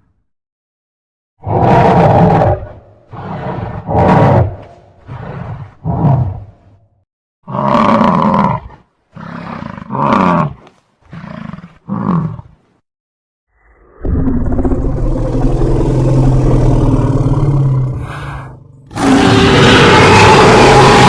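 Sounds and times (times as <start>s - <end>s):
cartoon dinosaur roars: 13.6s - 21.0s.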